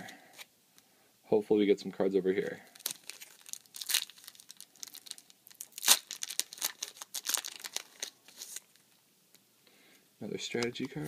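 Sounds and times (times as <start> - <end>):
foil wrapper tearing and crinkling: 2.7 - 8.8.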